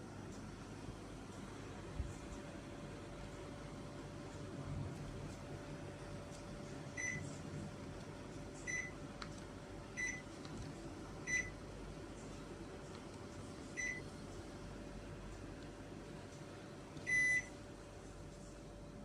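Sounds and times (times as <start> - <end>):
air conditioner humming: 0.0 - 19.0
air conditioner short beeps: 6.9 - 7.4, 8.6 - 9.1, 9.9 - 10.4, 11.2 - 11.7, 13.6 - 14.1, 16.9 - 17.7.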